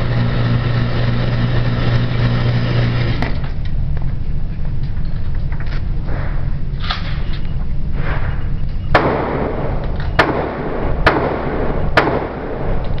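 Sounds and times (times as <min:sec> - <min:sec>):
steady low rumble: 0:00.0 - 0:13.0
rifle shots with echo: 0:08.9 - 0:13.0.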